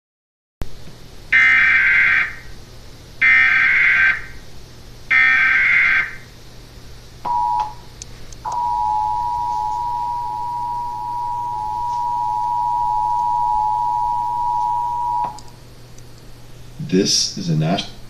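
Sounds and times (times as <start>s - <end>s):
two-tone attention signal: 7.3s - 7.8s, 8.5s - 15.4s.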